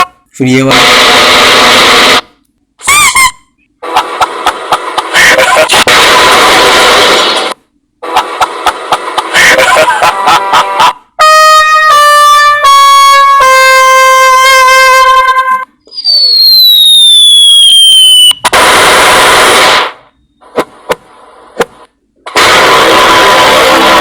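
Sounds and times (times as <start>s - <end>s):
loud blast: 5.7s - 7.6s, 17.4s - 20.1s, 22.3s - 24.0s
long falling whistle: 15.9s - 18.4s.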